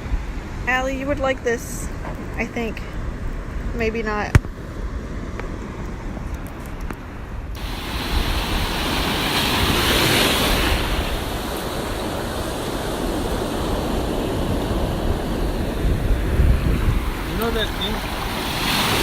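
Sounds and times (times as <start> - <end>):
wind buffeting microphone: 0.0 - 19.0
ocean surf washing up: 7.6 - 19.0.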